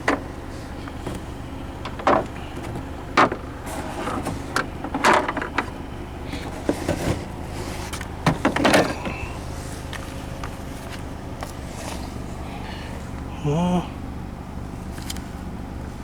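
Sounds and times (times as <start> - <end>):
knocks and clattering rustles: 0.0 - 12.4
steady low hum: 0.0 - 16.0.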